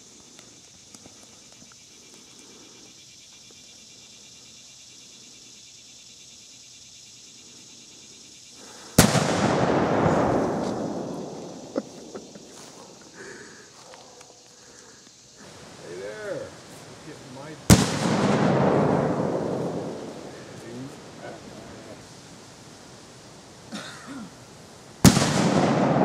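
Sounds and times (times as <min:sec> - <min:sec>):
bomb explosion bang: 0:09.0 - 0:12.1, 0:17.7 - 0:20.6, 0:25.0 - 0:26.0
rumbling echo: 0:09.0 - 0:12.1, 0:17.7 - 0:20.6.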